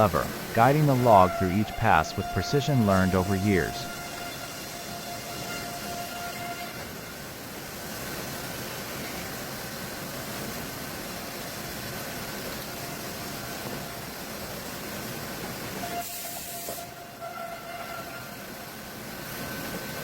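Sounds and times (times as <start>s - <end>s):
sharp hiss: 15.9s - 17.0s.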